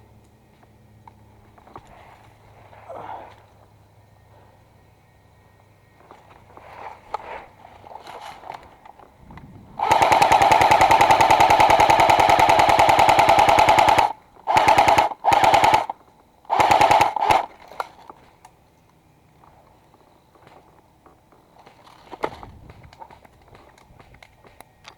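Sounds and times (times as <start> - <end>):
airsoft machine gun bursts: 9.8 - 17.9.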